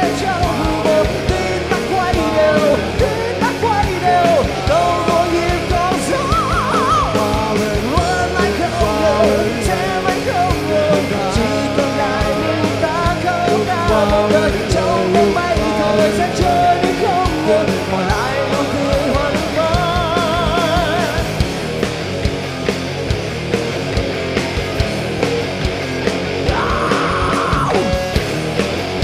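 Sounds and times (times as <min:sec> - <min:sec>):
person singing: 0:00.0 - 0:21.3, 0:26.5 - 0:28.0
rock band playing live: 0:00.0 - 0:29.0.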